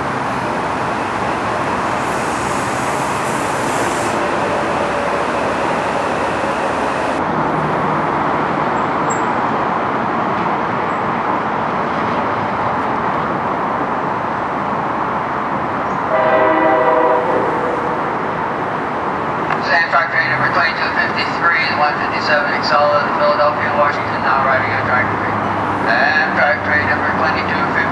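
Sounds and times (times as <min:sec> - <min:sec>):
electric train running: 0:00.0 - 0:07.2
train horn chord: 0:16.1 - 0:18.1.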